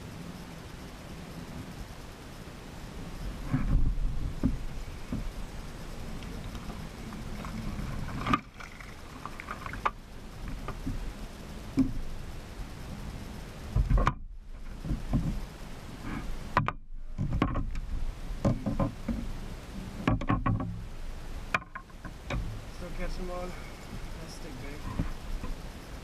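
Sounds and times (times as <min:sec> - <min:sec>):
steady low rumble: 0:00.0 - 0:26.0
knocks and clatters against hull: 0:03.4 - 0:05.5, 0:06.2 - 0:11.1, 0:11.7 - 0:12.0, 0:13.7 - 0:15.5, 0:16.1 - 0:19.3, 0:19.9 - 0:20.9, 0:21.5 - 0:22.6, 0:24.8 - 0:25.6.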